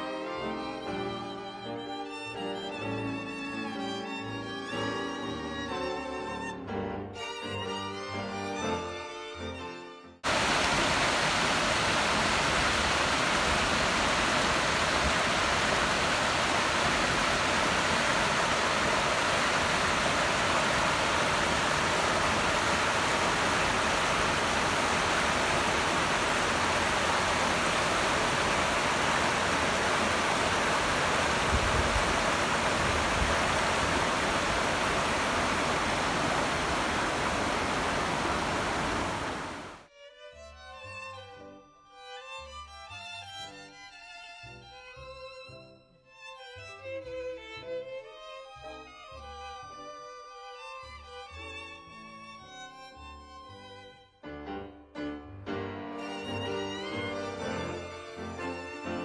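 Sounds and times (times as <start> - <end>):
flowing water rushing: 10.2 - 39.8.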